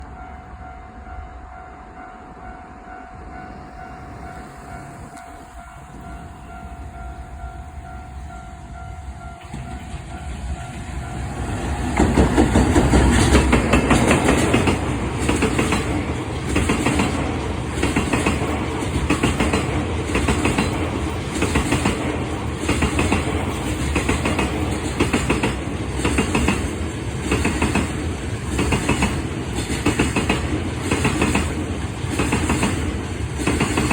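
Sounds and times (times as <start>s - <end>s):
freight train passing: 0.0s - 33.9s
wheels clattering over rail joints: 9.4s - 33.9s.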